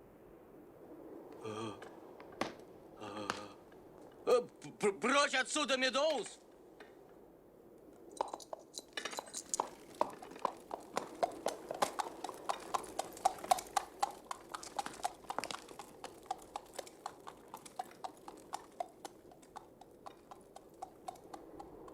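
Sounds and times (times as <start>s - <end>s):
horse hooves clip-clopping on street: 8.0s - 21.9s.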